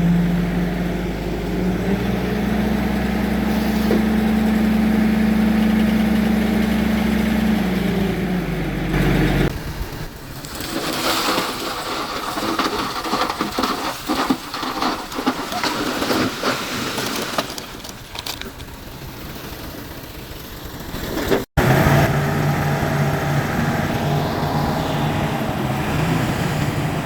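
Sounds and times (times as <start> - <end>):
diesel engine running: 0.0 - 10.8, 18.0 - 27.0.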